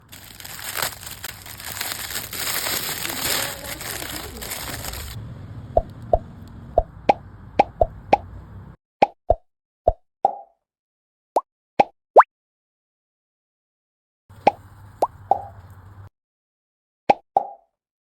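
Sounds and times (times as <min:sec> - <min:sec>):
plastic packaging crinkling: 0:00.0 - 0:05.2.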